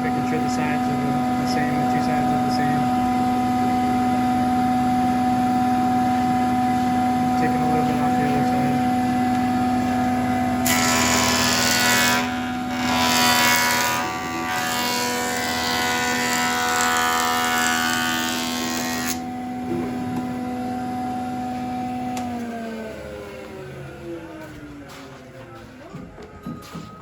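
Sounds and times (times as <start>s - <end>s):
power tool motor whining: 0.0s - 24.8s
tool cutting wood: 7.3s - 20.5s.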